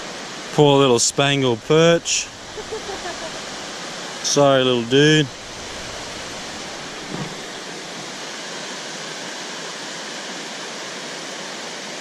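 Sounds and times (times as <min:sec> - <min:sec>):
river water pouring through weir: 0:00.0 - 0:12.0
faint thump: 0:06.8 - 0:07.5.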